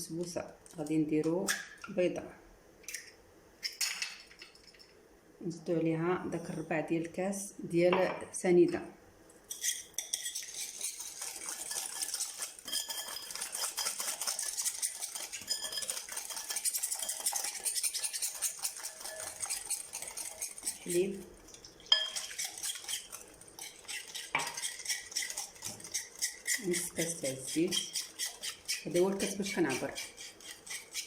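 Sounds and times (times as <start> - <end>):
whisk clicking against bowl: 10.0 - 21.1, 21.9 - 31.0.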